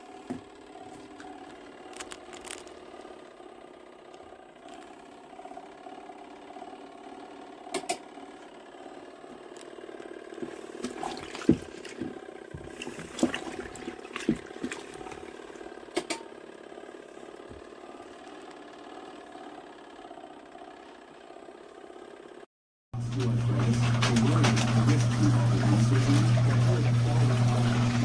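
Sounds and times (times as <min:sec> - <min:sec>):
washing machine motor hum: 0:00.0 - 0:22.4, 0:23.0 - 0:28.0
sharp clicks and knocks: 0:07.7 - 0:08.0, 0:15.9 - 0:16.3
water moving: 0:10.4 - 0:15.6.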